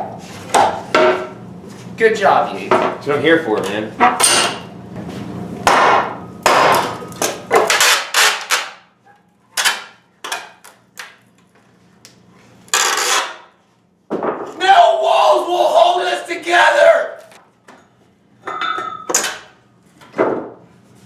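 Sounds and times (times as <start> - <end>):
hammer striking wall: 5.6 - 7.0.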